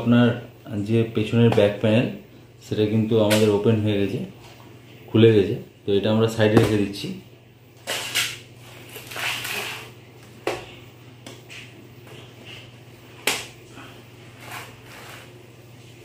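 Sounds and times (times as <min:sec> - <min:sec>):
steady low hum: 0:00.0 - 0:16.0
soft scraping: 0:14.2 - 0:16.0.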